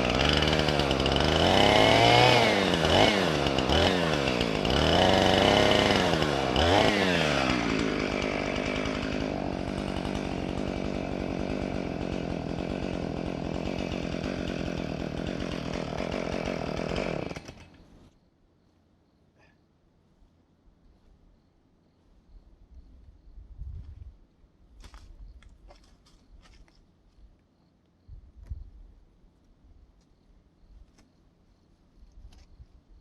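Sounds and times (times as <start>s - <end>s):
chainsaw engine revving: 0.0s - 18.1s.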